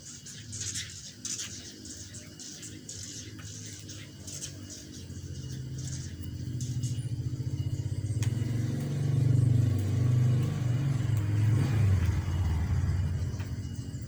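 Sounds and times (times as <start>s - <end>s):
vehicle engine running: 5.4s - 14.0s.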